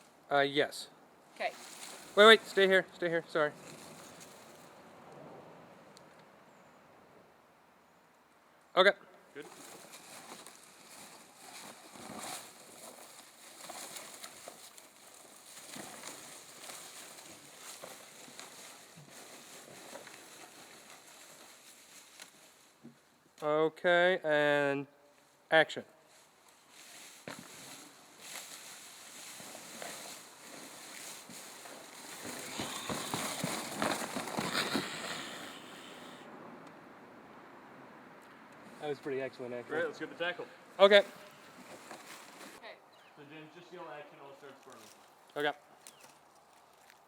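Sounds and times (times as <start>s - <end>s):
faint background noise: 0.0s - 47.0s
crackling and crinkling: 1.4s - 2.8s, 3.4s - 4.8s, 9.4s - 23.0s, 26.1s - 36.2s, 41.3s - 42.7s, 44.5s - 47.0s.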